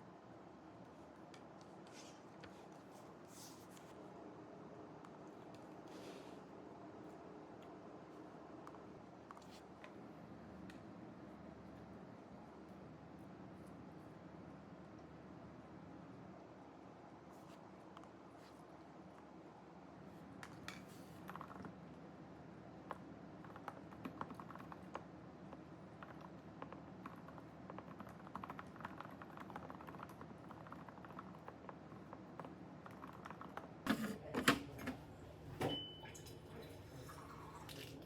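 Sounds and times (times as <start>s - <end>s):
keyboard typing: 21.2s - 21.7s, 23.4s - 25.1s, 25.9s - 33.7s.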